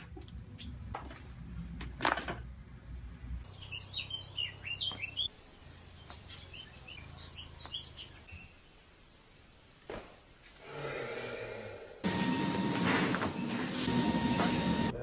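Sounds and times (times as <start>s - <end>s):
small bird chirping: 3.4s - 8.8s.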